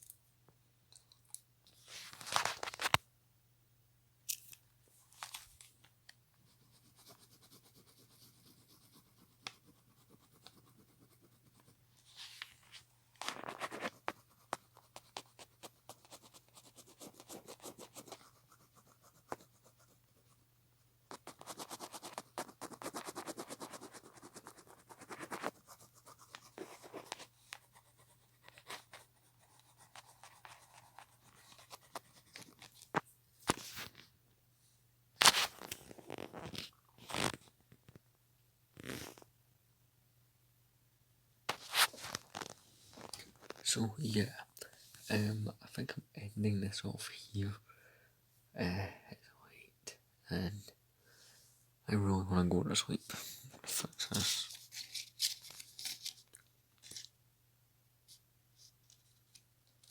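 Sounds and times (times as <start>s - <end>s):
scratching and rubbing handling: 6.8s - 20.3s, 21.1s - 34.0s, 41.5s - 43.8s.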